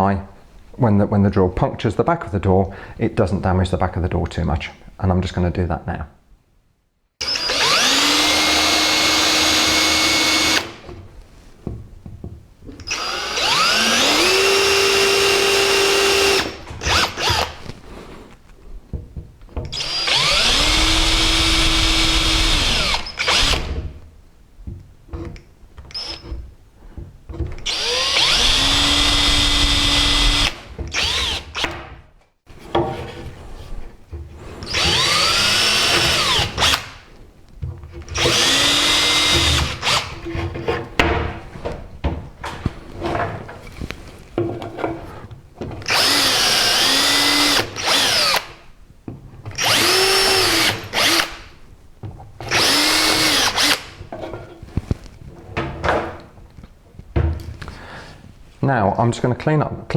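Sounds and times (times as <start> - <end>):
electric drill whining: 7.2 - 10.8, 12.8 - 17.6, 19.7 - 23.8, 27.6 - 31.8, 34.7 - 37.0, 38.1 - 40.1, 45.9 - 48.6, 49.6 - 51.4, 52.5 - 53.9.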